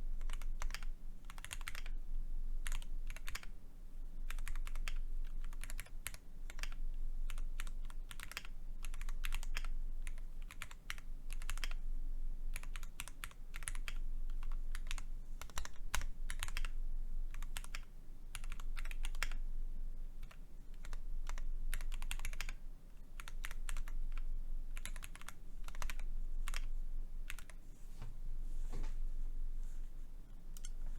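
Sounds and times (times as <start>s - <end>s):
mechanical keyboard typing: 0.2s - 2.0s, 2.6s - 3.5s, 4.3s - 11.8s, 12.6s - 19.4s, 20.2s - 22.6s, 23.2s - 26.7s, 27.3s - 27.6s.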